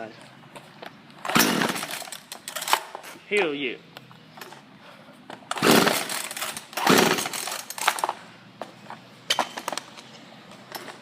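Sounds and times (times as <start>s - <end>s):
chainsaw engine bursts: 1.3s - 2.2s, 5.5s - 7.8s.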